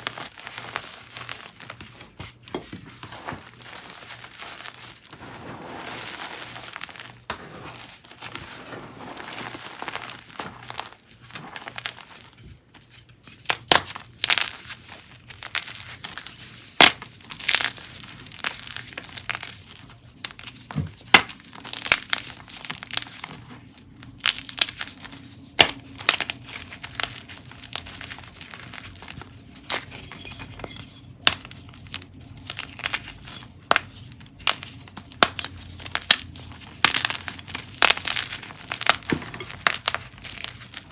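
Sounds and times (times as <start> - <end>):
chalk cracking and crunching: 0.0 - 40.9.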